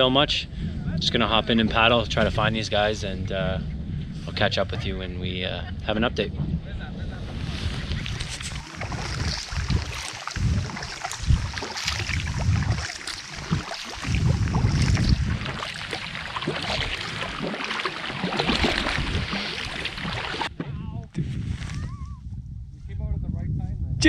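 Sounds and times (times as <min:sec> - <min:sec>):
wind on microphone: 0:00.0 - 0:24.0
water splashing around canoe: 0:07.2 - 0:20.6.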